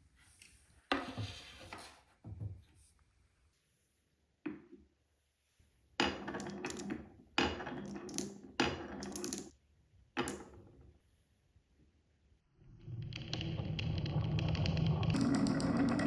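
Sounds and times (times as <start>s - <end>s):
marbles clacking on wooden track: 6.0s - 9.5s, 10.2s - 10.6s, 13.0s - 16.0s
marbles rolling down wooden slopes: 12.8s - 16.0s.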